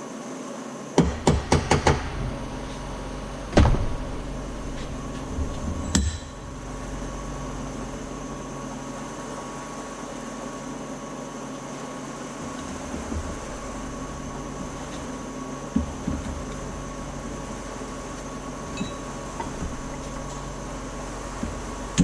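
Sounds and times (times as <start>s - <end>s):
steady hum: 0.0s - 22.0s
hammer striking metal punch: 5.8s - 6.4s.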